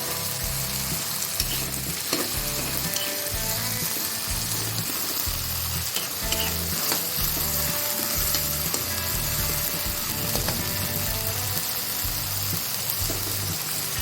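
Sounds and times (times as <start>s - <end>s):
food sizzling in hot oil: 0.0s - 14.0s.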